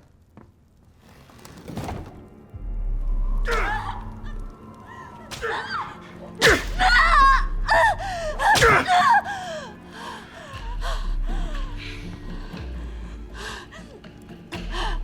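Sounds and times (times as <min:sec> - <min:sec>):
low background music: 0:00.7 - 0:15.0
person gasping and crying out: 0:04.9 - 0:14.0
sharp strikes: 0:06.4 - 0:06.9.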